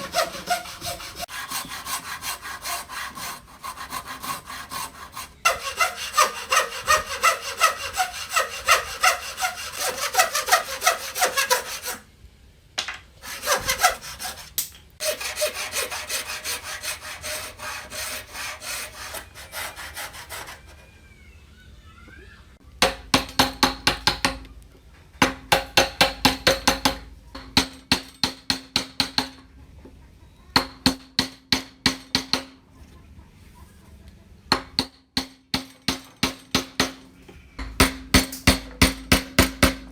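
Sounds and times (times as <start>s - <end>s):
hand saw cutting wood: 0.0s - 12.1s, 13.2s - 20.8s
ringing hammer strikes: 37.6s - 39.8s.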